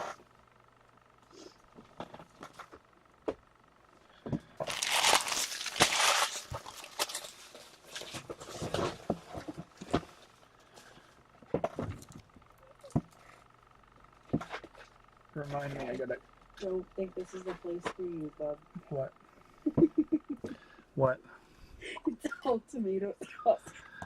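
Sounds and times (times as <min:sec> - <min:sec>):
packaging being torn open: 0:04.6 - 0:07.6.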